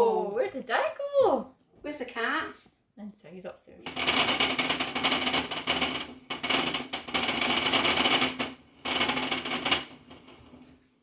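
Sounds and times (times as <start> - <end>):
firework crackling: 3.9 - 10.4.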